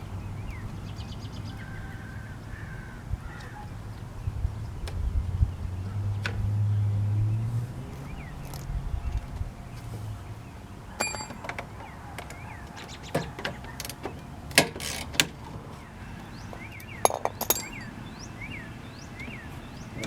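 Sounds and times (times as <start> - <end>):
hand tools knocking on metal: 11.0 - 15.3, 16.5 - 18.1.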